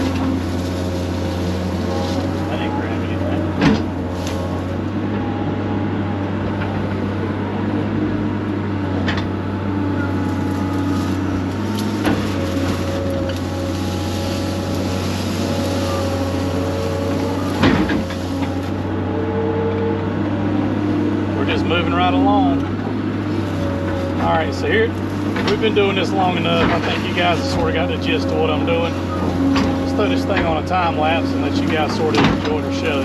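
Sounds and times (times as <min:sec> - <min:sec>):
diesel engine running under load: 0:00.0 - 0:33.0
hydraulic whine: 0:00.0 - 0:33.0.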